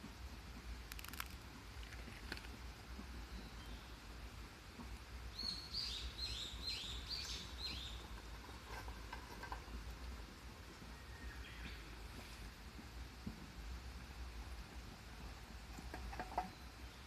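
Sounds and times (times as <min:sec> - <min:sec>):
songbird singing: 0:03.1 - 0:04.2, 0:05.2 - 0:09.8, 0:10.6 - 0:12.4, 0:15.9 - 0:17.0.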